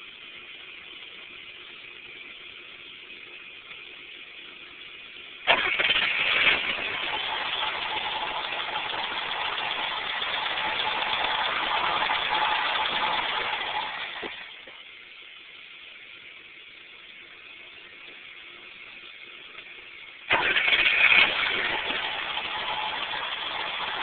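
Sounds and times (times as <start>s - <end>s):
starter cranking car engine: 5.5s - 14.7s, 20.3s - 24.0s.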